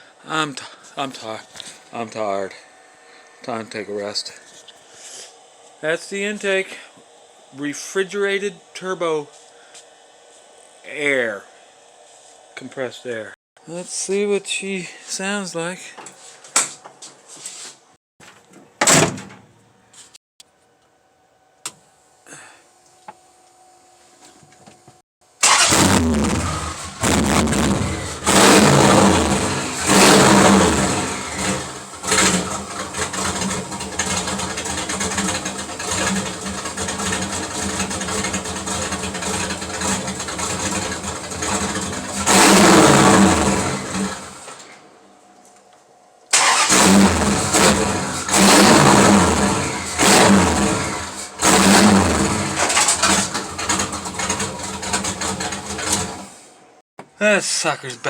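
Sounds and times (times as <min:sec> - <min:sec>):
engine clicks: 0:25.4 - 0:25.9, 0:46.3 - 0:49.2, 0:52.5 - 0:56.1
engine revving: 0:25.4 - 0:44.6, 0:46.3 - 0:56.3.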